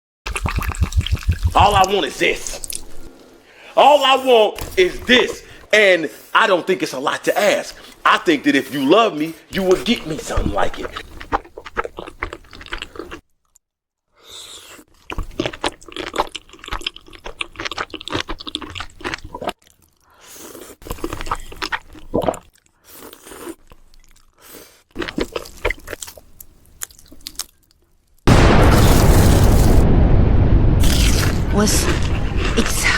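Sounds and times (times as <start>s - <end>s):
crunchy chewing: 9.6s - 13.6s, 14.2s - 29.8s, 30.8s - 32.9s.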